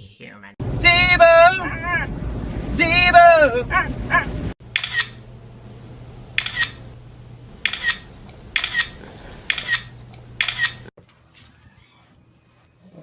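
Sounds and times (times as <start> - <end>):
sharp double clicks: 4.7 - 5.2, 6.4 - 6.8, 7.6 - 10.9.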